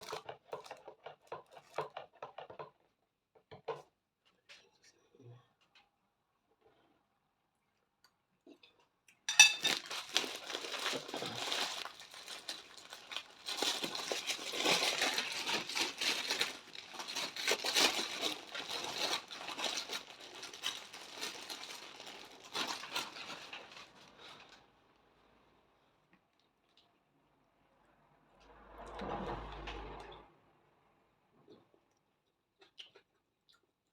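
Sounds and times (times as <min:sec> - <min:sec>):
close-up crinkling and crunching: 0:09.3 - 0:24.7.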